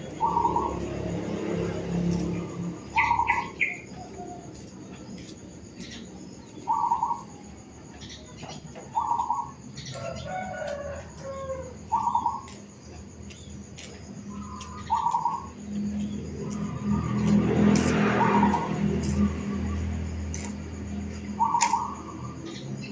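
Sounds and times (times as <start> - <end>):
dove cooing: 0.0 - 1.8, 2.4 - 4.6, 6.6 - 7.4, 8.5 - 12.5, 21.4 - 22.4
low engine-like hum: 0.0 - 22.9
small birds chirping: 0.0 - 22.9.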